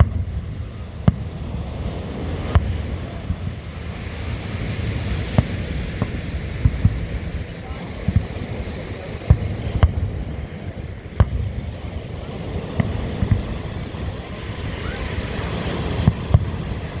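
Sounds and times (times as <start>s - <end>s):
fireworks booming: 0.0s - 17.0s
surf: 0.0s - 17.0s
wind: 0.0s - 17.0s.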